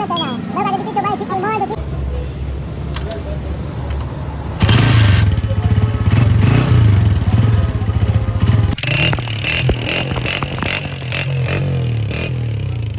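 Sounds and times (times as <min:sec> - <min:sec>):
motorcycle engine running: 0:03.4 - 0:12.9.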